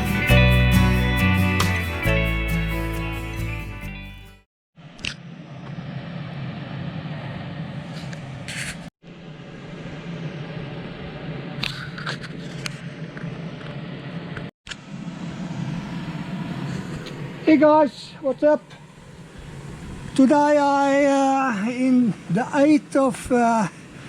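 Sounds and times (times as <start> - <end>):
steady low hum: 4.8 - 24.0.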